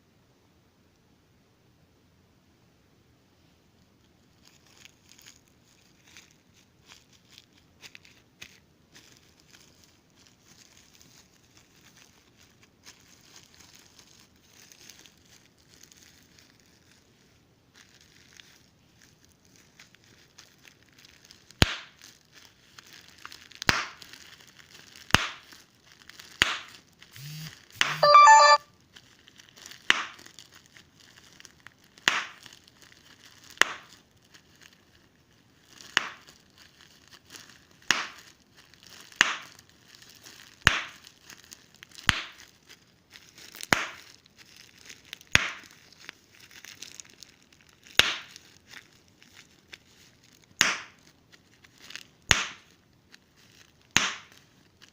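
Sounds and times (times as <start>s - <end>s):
plastic crinkling: 3.8s - 54.9s
bubble wrap popping: 4.0s - 54.9s
short loud pitched sound: 27.2s - 28.6s.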